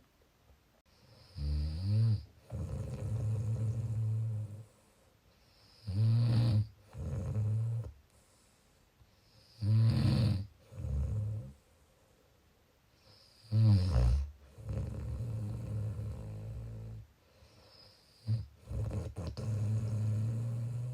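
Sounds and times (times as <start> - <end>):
loud snoring: 1.2 - 4.7, 5.7 - 7.9, 9.4 - 11.6, 13.2 - 17.0, 18.0 - 20.9.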